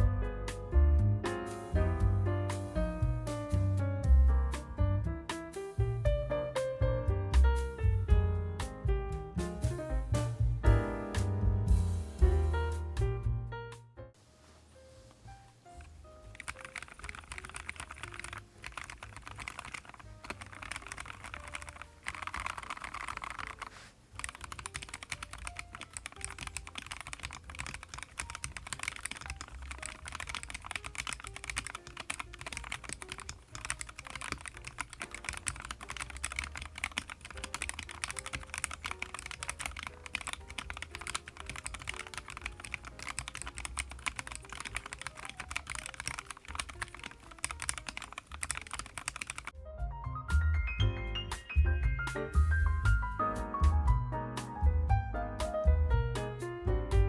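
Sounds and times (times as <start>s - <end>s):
mechanical keyboard typing: 15.7s - 49.6s.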